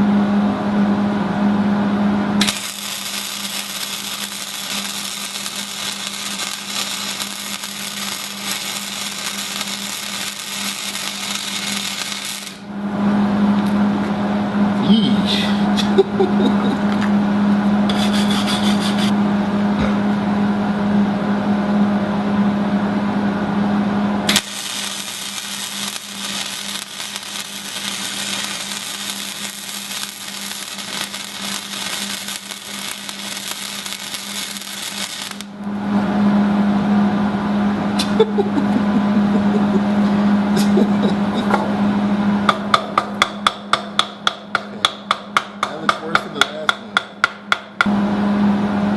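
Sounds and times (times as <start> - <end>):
welder crackling hiss: 2.4 - 12.6, 24.3 - 35.5
welder arc buzzing: 2.4 - 12.7, 24.2 - 35.7.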